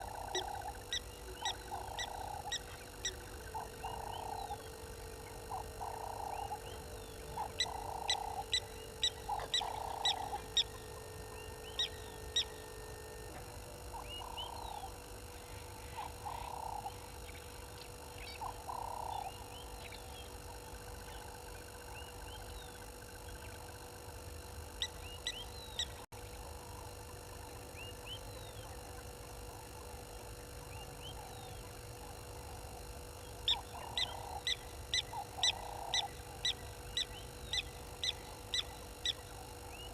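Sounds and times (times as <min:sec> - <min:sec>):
faint steady hum: 0:00.0 - 0:39.9
animal calls: 0:07.3 - 0:12.5.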